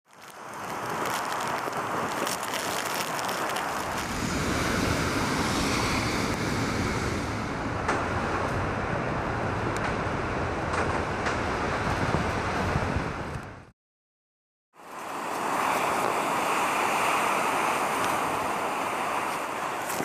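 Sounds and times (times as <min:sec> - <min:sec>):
storm wind gusting: 0:00.5 - 0:13.7
wind buffeting microphone: 0:00.6 - 0:13.7.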